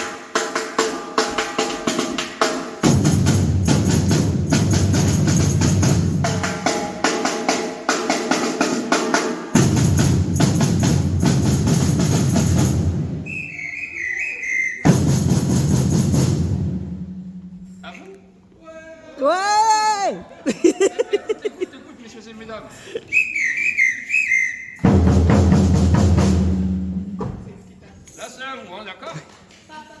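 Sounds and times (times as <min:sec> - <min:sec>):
samba percussion band: 0:00.0 - 0:13.3, 0:14.8 - 0:17.6, 0:24.8 - 0:27.6.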